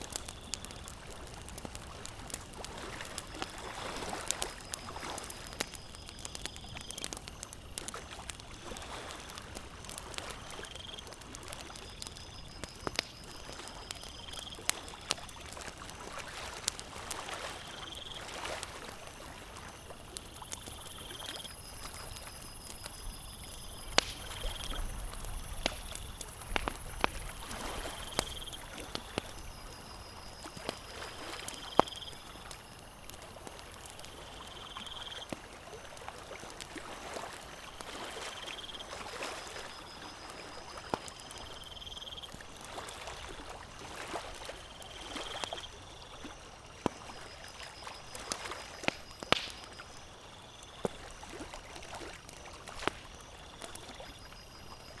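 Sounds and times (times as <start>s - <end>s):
campfire crackling and popping: 0.0s - 54.9s
water lapping: 0.1s - 5.6s, 14.5s - 22.1s, 24.2s - 34.5s, 35.2s - 41.5s, 42.3s - 49.8s, 51.0s - 54.0s.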